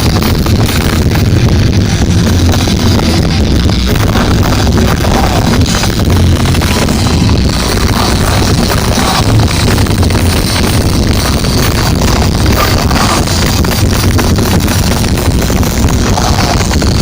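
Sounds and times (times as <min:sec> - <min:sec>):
punk rock band playing: 0:00.0 - 0:17.0.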